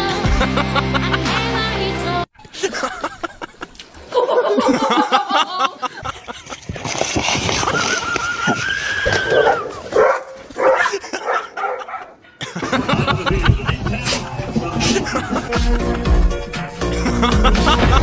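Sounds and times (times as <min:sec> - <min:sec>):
dog whining: 0:08.5 - 0:12.4
people laughing and talking: 0:10.8 - 0:18.0.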